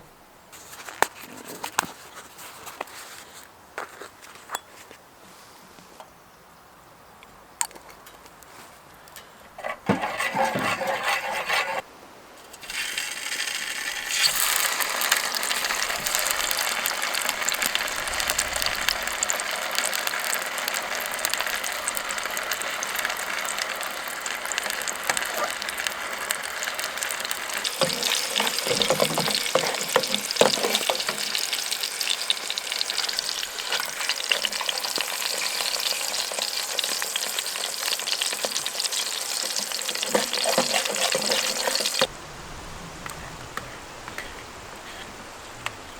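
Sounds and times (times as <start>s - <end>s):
pan being stirred: 9.6s - 11.8s, 12.5s - 42.1s
food sizzling in a pan: 12.6s - 42.1s.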